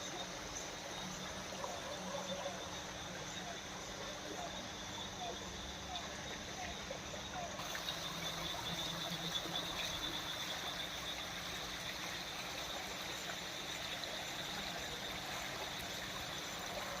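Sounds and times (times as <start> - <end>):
rainwater running and trickling: 7.6 - 17.0.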